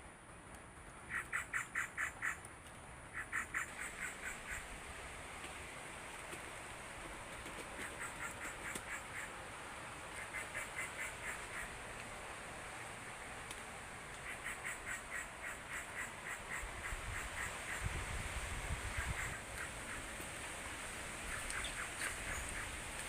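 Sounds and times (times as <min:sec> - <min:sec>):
steady high hiss: 0:00.0 - 0:23.0
animal rapid calls: 0:01.1 - 0:02.4, 0:03.1 - 0:04.7, 0:07.5 - 0:09.4, 0:10.1 - 0:11.8, 0:14.2 - 0:18.0, 0:18.8 - 0:20.2.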